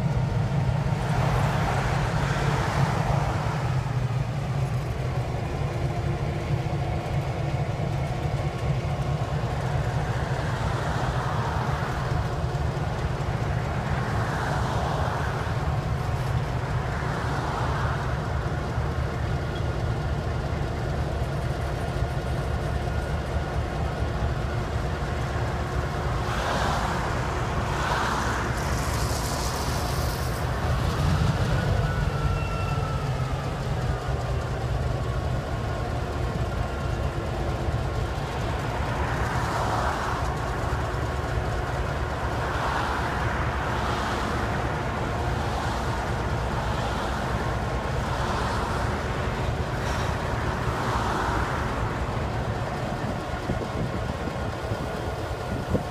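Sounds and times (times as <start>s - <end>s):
diesel locomotive rumbling: 0.0s - 55.9s
hiss: 27.7s - 31.2s.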